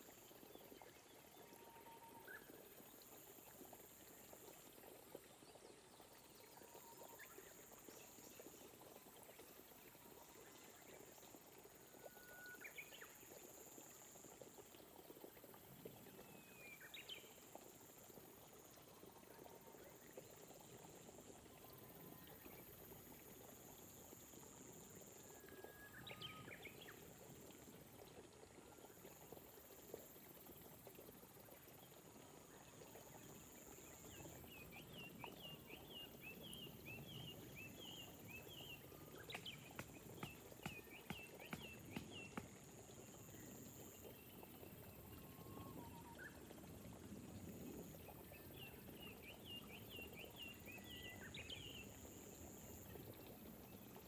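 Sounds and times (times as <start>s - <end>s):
gentle rain patter: 0.0s - 54.0s
bird chirping: 36.3s - 42.4s.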